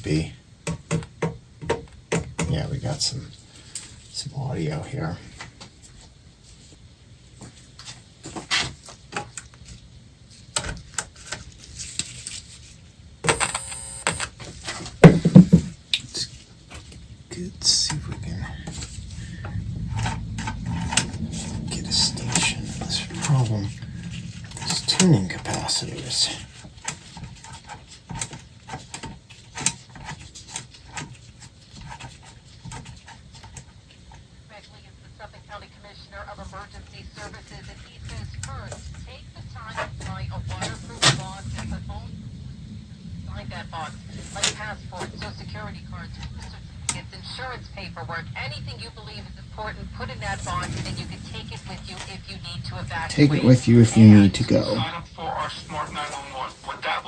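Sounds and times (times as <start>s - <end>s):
radio speaker crackling and popping: 0.0s - 6.2s, 7.4s - 57.0s
radio buzzing burst: 13.2s - 14.4s, 15.0s - 15.8s, 18.5s - 26.5s, 43.3s - 57.0s.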